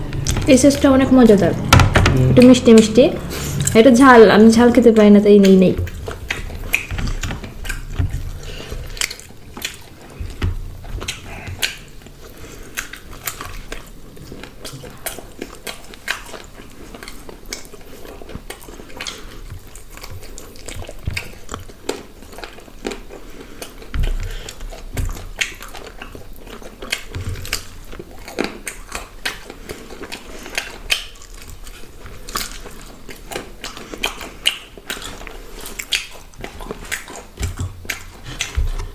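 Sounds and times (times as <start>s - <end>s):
close-up chewing: 0.0s - 38.9s
low thump: 1.7s - 2.4s
mouth clicks and smacks: 5.0s - 17.7s, 23.6s - 38.9s.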